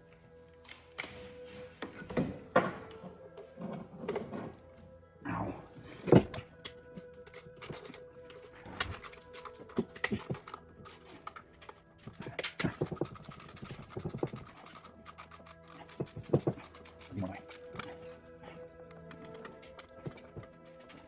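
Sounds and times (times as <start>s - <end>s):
faint background music: 0.0s - 21.0s
hand tools clicking and scraping: 5.8s - 21.0s.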